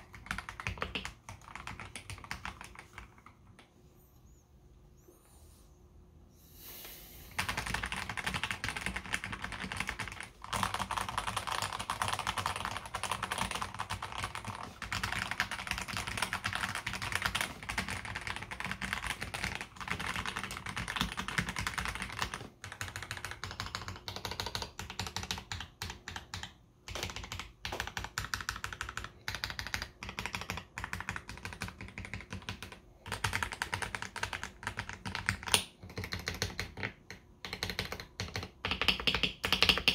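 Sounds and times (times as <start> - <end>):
mechanical keyboard typing: 0.0 - 3.6, 7.3 - 39.9.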